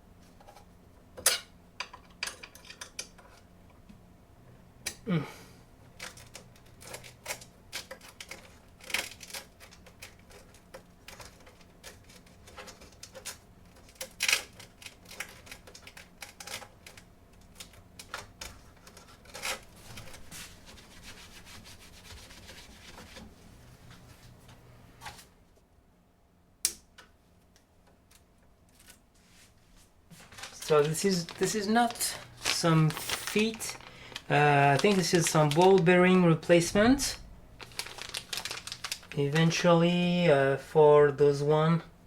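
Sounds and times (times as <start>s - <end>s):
packaging rubbing: 30.2s - 39.6s.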